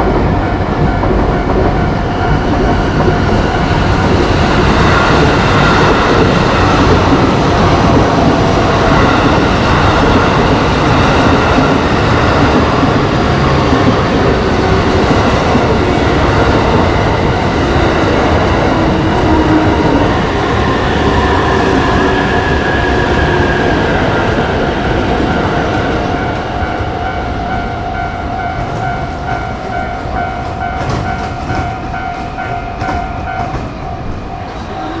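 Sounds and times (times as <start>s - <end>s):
crossing warning bell dinging: 0.0s - 35.0s
train wheels on rails: 0.0s - 35.0s.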